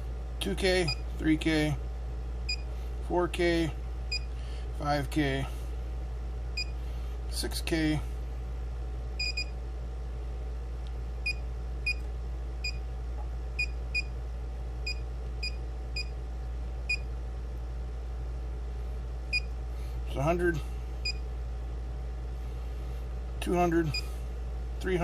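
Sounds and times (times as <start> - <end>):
steady low hum: 0.0 - 25.0
electronic keypress beeps: 9.2 - 9.5.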